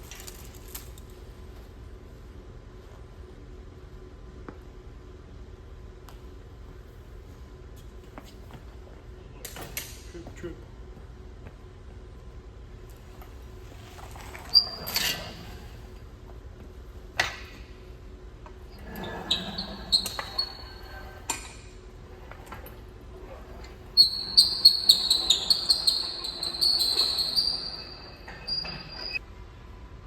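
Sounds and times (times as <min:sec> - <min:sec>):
sharp high-pitched squeaks: 0:18.8 - 0:21.2, 0:23.6 - 0:29.2.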